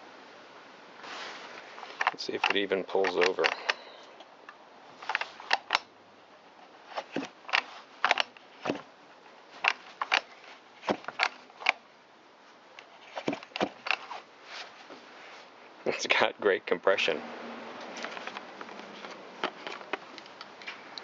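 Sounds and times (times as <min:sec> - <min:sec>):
chainsaw recoil starter pulls: 0:01.9 - 0:03.8.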